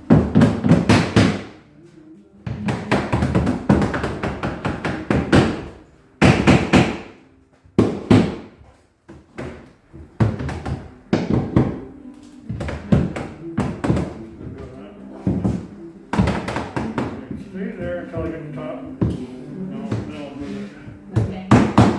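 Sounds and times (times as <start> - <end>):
hammer knocking on wood: 21.2 - 21.9.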